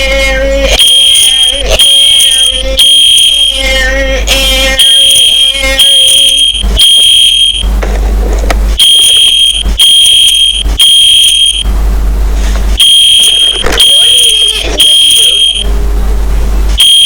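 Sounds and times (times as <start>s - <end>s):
fire alarm horn beeping: 0.7s - 7.7s, 8.8s - 11.7s, 12.8s - 15.8s, 16.8s - 17.0s.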